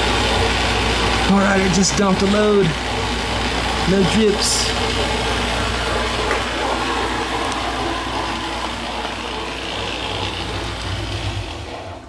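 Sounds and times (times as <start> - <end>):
dishwasher pump motor hum: 0.0 - 12.0
water rushing: 0.0 - 12.0.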